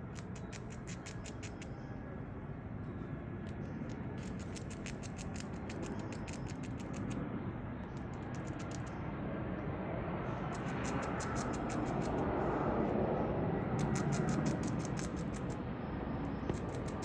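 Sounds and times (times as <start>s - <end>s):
squirrel gnawing nut shell: 0.0s - 1.8s, 3.5s - 7.2s, 7.8s - 9.0s, 10.4s - 12.3s, 13.8s - 15.6s, 16.4s - 17.0s.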